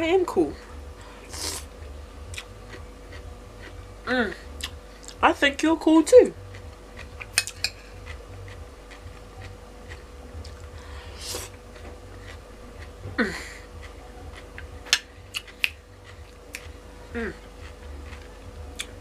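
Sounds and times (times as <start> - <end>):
person chewing: 1.2 - 5.2, 6.3 - 19.0
person humming: 4.0 - 4.7, 13.0 - 14.3, 17.0 - 19.0.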